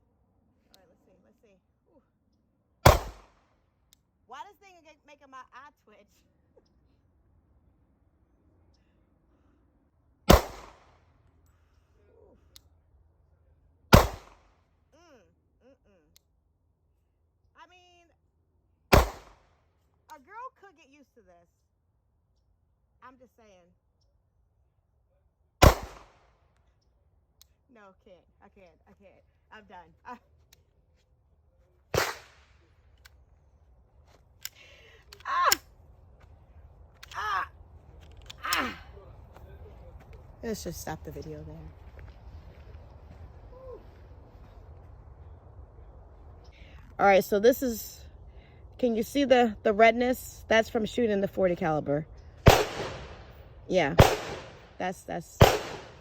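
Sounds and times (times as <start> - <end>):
gunshot: 2.8 - 3.4, 10.3 - 11.0, 13.9 - 14.5, 18.9 - 19.5, 25.6 - 26.3, 31.9 - 32.5, 52.4 - 53.4, 54.0 - 54.7, 55.4 - 56.0
pistol shots with echo: 2.8 - 3.4, 10.3 - 11.0, 13.9 - 14.5, 18.9 - 19.4, 25.6 - 26.3, 32.0 - 32.5, 52.4 - 54.7, 55.4 - 56.0.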